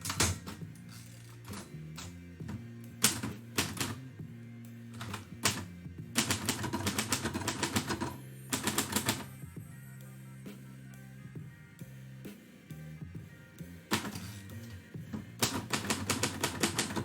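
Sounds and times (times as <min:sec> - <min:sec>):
typewriter keys striking: 0:00.0 - 0:00.6, 0:03.0 - 0:04.0, 0:05.0 - 0:09.3, 0:13.9 - 0:14.3, 0:15.4 - 0:17.0.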